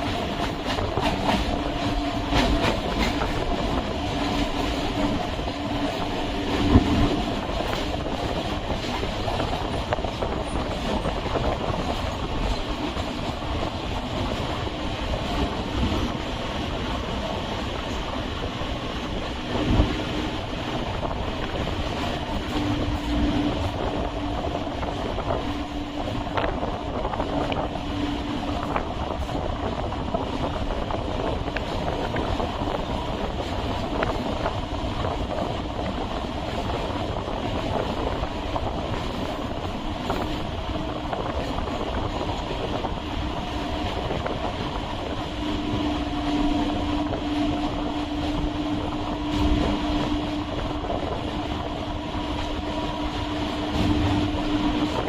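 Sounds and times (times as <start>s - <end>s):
train wheels rumbling on track: 0.0s - 55.0s
steady hum: 45.0s - 55.0s.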